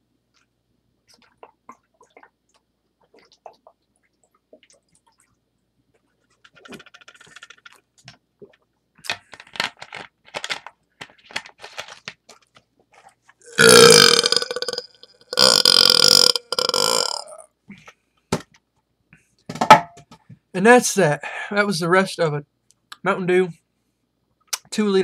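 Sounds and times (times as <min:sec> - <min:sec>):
man gulping soda: 0:00.3 - 0:09.1, 0:12.3 - 0:17.5
loud burps: 0:13.4 - 0:17.5.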